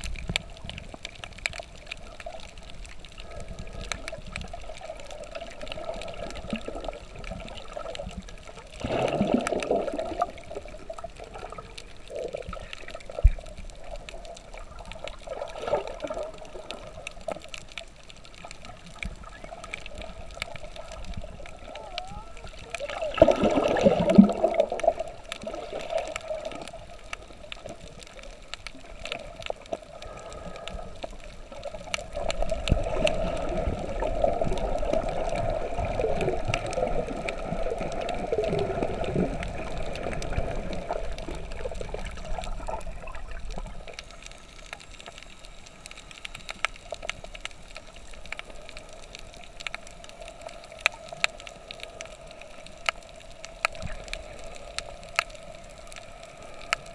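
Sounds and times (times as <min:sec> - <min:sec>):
water gurgling and churning: 0:08.7 - 0:13.2, 0:22.5 - 0:26.6
small clicks: 0:24.1 - 0:56.9
steady droning hum: 0:42.4 - 0:56.9.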